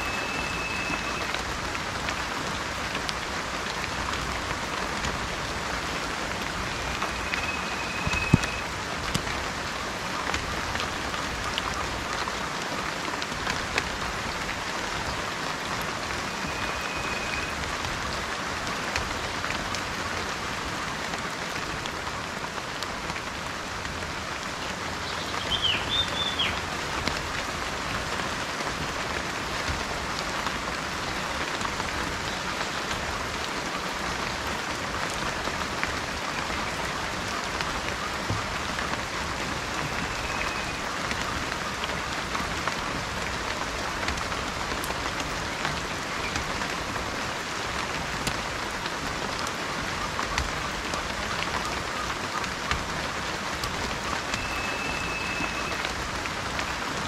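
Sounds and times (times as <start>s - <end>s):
bird chirps: 0.0s - 1.3s, 6.8s - 8.6s, 25.0s - 26.6s, 54.4s - 55.7s
whistled bird call: 0.0s - 1.4s, 6.7s - 8.7s, 16.3s - 17.6s, 25.0s - 26.6s, 39.9s - 40.9s, 54.4s - 55.9s
rain falling: 0.0s - 57.0s.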